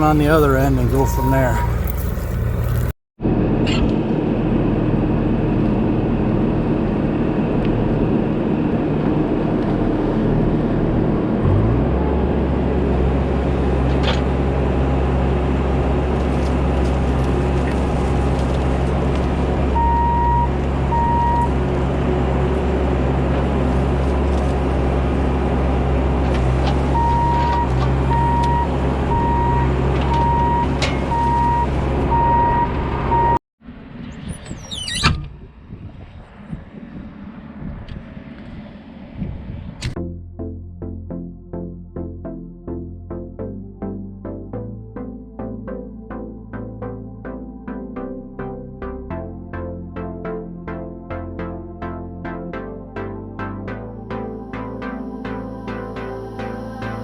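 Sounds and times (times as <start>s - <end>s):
beeping alarm: 0.0s - 2.7s, 19.8s - 21.6s, 26.9s - 33.4s
excavator diesel engine running: 0.0s - 33.4s.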